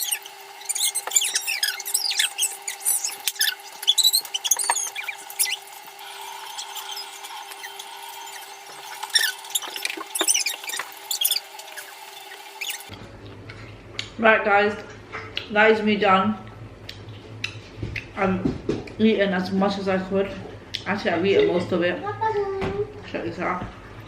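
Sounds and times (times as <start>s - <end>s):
short high squeaks: 0.0s - 12.9s.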